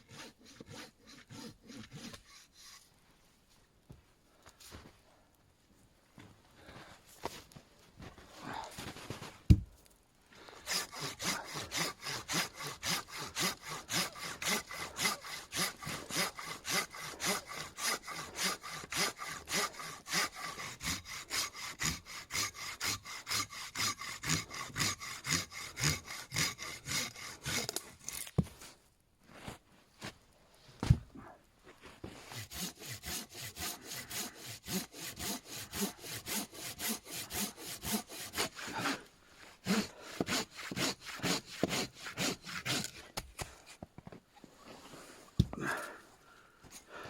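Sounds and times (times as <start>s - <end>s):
hand saw cutting wood: 0.0s - 2.9s, 10.6s - 28.4s, 32.1s - 43.8s.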